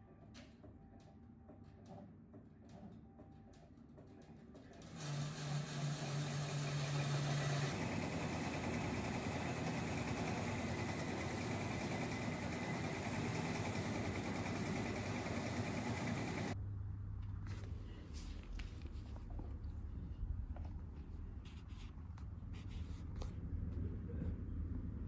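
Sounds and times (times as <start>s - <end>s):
machine humming and whining: 5.0s - 16.6s.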